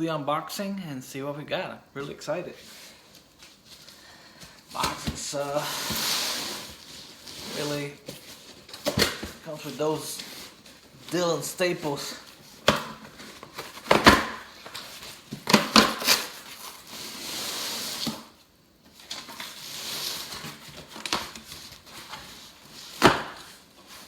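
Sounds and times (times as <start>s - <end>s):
cardboard rustling and sliding: 4.6s - 24.0s
cardboard flaps snapping and scraping: 12.6s - 16.4s, 22.8s - 23.6s.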